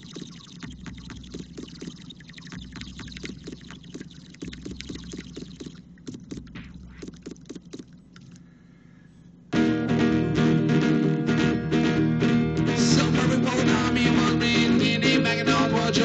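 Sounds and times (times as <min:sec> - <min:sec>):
water pipe bubbling: 0:00.0 - 0:08.5.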